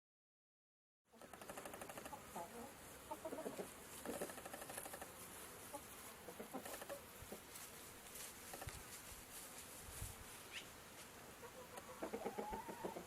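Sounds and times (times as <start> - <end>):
faint clucking bird calls: 1.1 - 7.6, 10.5 - 13.0.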